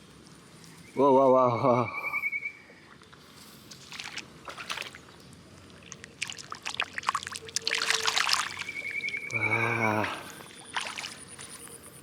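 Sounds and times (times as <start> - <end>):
muddy water splashing: 2.9 - 11.8.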